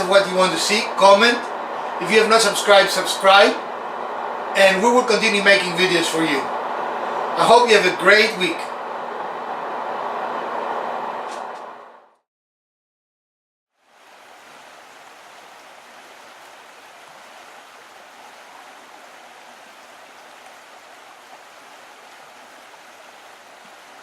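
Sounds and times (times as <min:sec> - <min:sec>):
steady rushing noise: 0:00.0 - 0:12.1.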